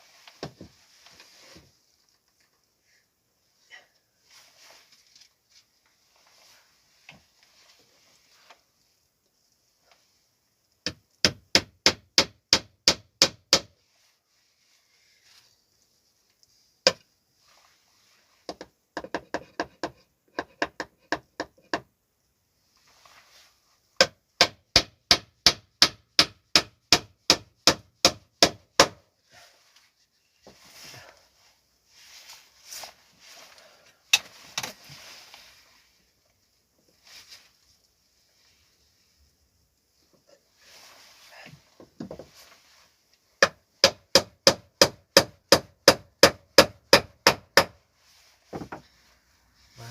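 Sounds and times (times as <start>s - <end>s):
hammer striking nails into wood: 10.9s - 13.7s, 24.0s - 29.0s, 43.4s - 47.8s.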